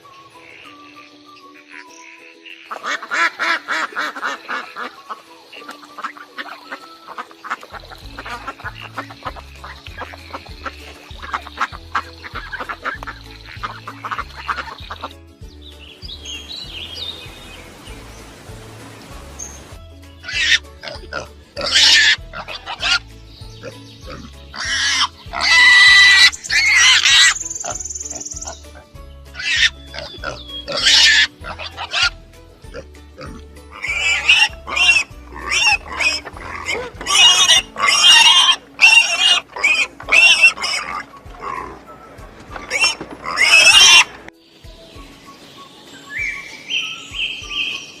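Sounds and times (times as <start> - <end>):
birds chirping: 0.0 - 48.0
background music with a beat: 6.8 - 46.4, 47.1 - 48.0
shrill animal squeals: 20.2 - 20.6, 21.6 - 23.0, 24.6 - 28.5, 29.4 - 30.1, 30.7 - 32.1, 33.7 - 41.7, 42.6 - 44.1.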